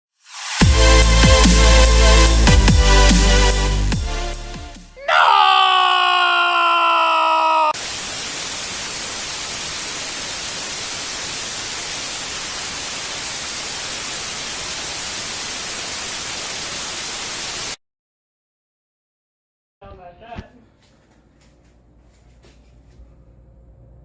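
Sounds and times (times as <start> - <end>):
static hiss: 7.8 - 17.8.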